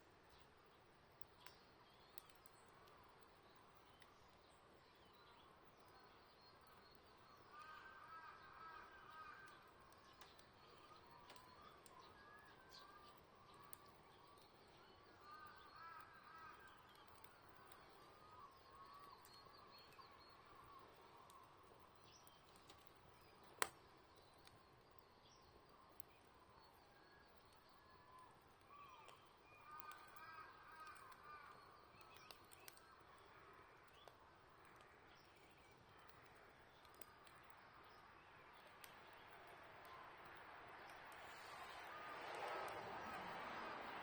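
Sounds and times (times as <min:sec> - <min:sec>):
campfire pop: 0:01.0 - 0:04.2, 0:09.4 - 0:43.3
faint bird calls: 0:06.7 - 0:23.6, 0:26.3 - 0:39.2.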